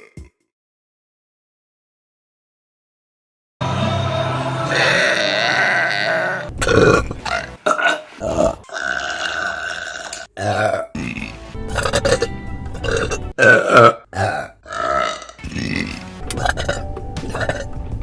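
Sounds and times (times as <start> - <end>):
women burping: 13.4 - 16.0.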